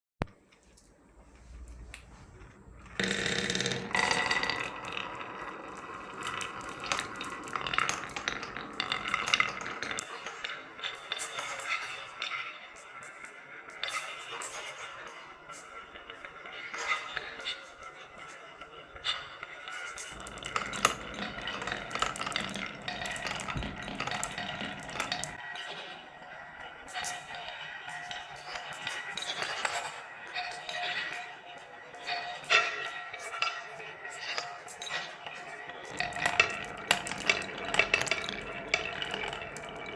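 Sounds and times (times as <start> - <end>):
marbles rolling down wooden run: 0.7 - 12.2, 15.6 - 25.4, 34.2 - 39.9.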